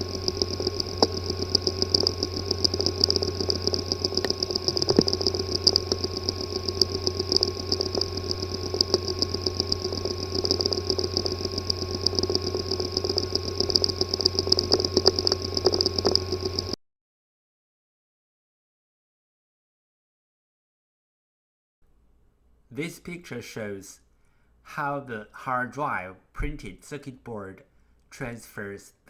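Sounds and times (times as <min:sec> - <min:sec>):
hard disk drive buzzing and ticking: 0:00.0 - 0:16.8.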